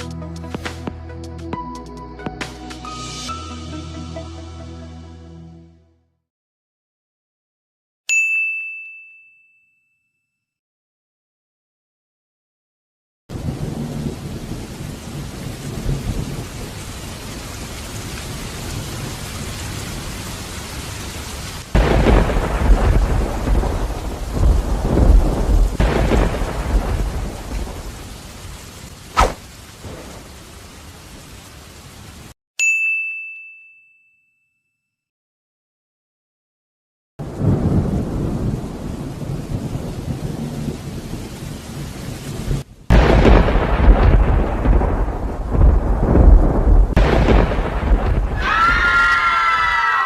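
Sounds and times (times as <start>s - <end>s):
bell-like ding: 8.1s - 10.5s, 32.6s - 35.0s
thunder rumbling: 13.3s - 20.4s, 21.6s - 32.0s, 37.2s - 49.4s
steady rain: 13.3s - 32.4s, 37.2s - 50.0s
thunder crack: 21.7s - 28.1s, 42.9s - 49.0s.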